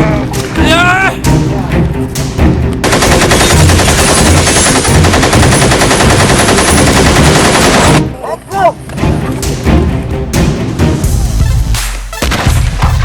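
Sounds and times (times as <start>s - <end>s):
rapid automatic gunfire: 2.8s - 8.0s.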